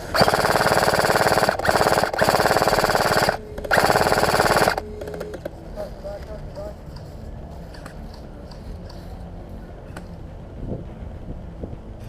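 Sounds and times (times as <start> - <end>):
airsoft rifle firing bursts: 0.0 - 5.4.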